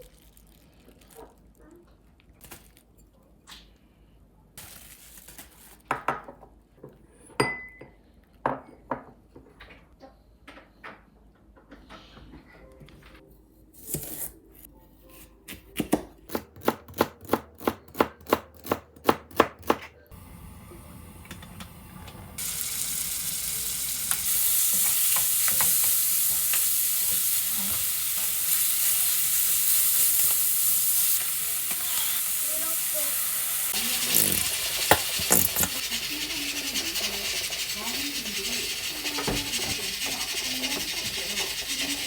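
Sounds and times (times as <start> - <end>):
knife chopping on cutting board: 15.2 - 19.9
food sizzling in frying pan: 20.2 - 42.0.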